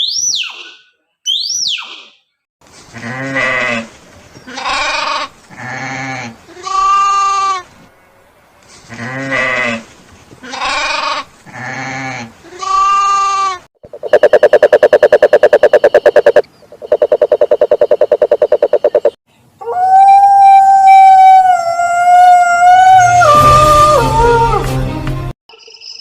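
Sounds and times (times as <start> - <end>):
wolf howling: 19.6 - 24.7.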